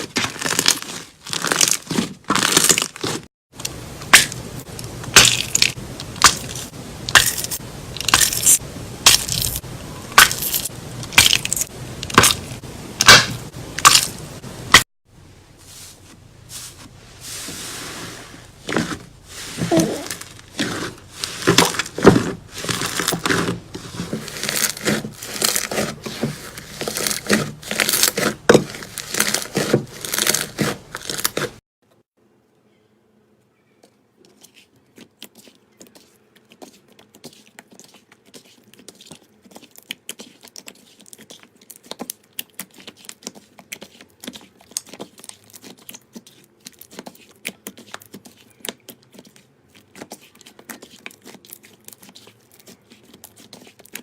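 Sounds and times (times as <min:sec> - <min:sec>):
slime crackling and popping: 0:00.2 - 0:03.2, 0:10.2 - 0:14.8, 0:19.9 - 0:31.6.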